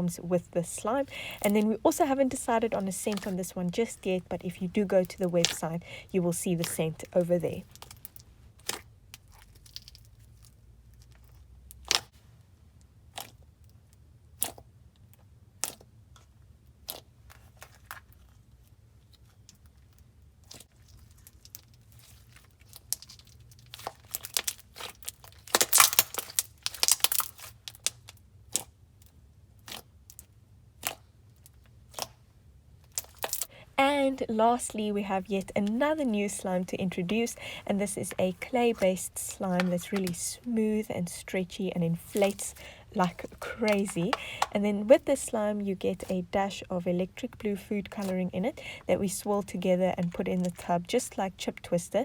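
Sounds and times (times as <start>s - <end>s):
slime popping and clicking: 22.9s - 28.7s, 32.9s - 33.5s.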